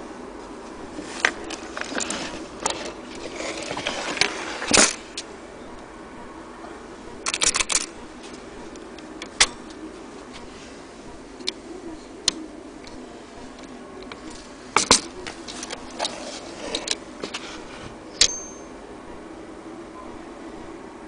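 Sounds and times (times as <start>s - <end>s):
typewriter mechanism clacking: 7.2s - 8.0s.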